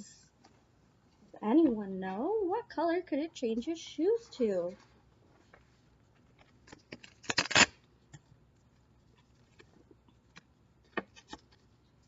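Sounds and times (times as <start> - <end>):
page rustling: 9.1 - 11.8.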